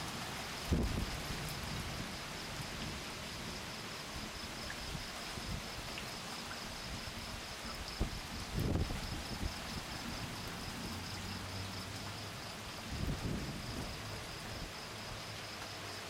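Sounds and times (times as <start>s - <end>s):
steady rain falling: 0.0s - 16.0s
high pulsing insect trill: 12.4s - 16.0s.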